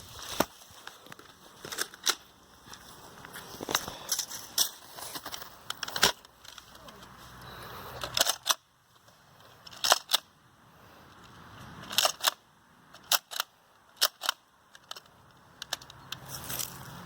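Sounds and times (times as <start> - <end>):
plastic toy blaster clacks: 8.0 - 8.6, 11.9 - 12.4, 13.0 - 16.0.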